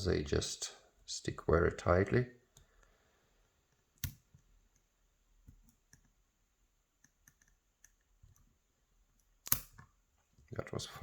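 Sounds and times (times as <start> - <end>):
lock pick clicking: 9.4 - 9.9.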